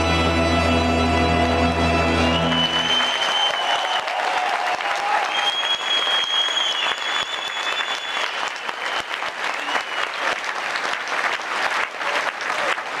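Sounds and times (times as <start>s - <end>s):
high whistle: 2.0s - 4.2s, 5.0s - 10.4s
audience applauding: 2.2s - 13.0s.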